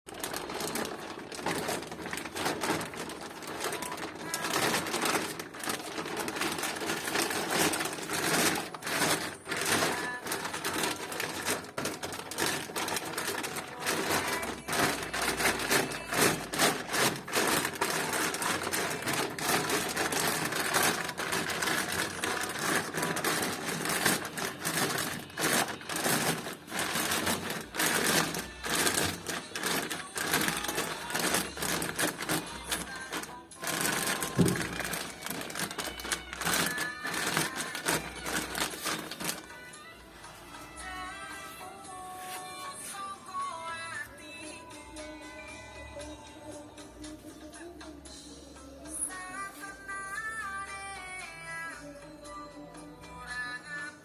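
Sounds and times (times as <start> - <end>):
dense clicking and clattering: 0.1 - 39.6.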